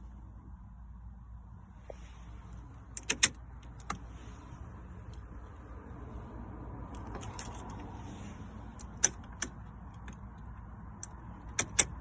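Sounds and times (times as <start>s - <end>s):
key clicking in ignition lock: 2.9s - 4.0s, 8.8s - 12.0s
car keys jangling: 6.9s - 7.9s.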